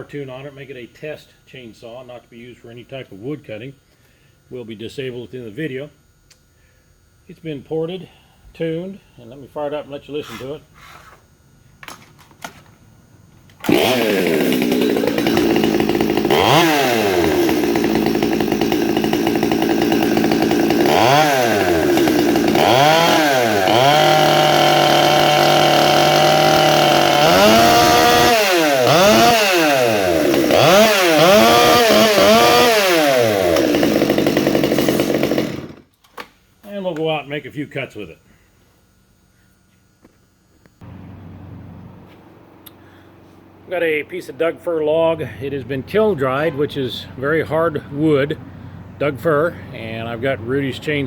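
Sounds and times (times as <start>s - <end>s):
chainsaw revving: 13.6s - 35.9s.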